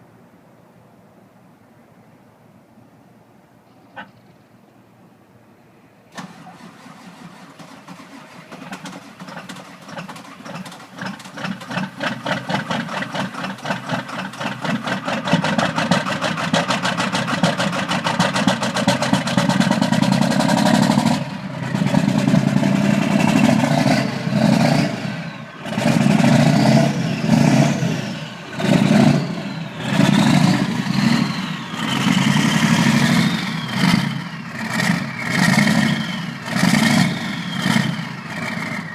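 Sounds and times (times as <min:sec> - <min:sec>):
diesel engine cranking and starting: 0:06.1 - 0:38.9
engine revving: 0:06.2 - 0:38.9.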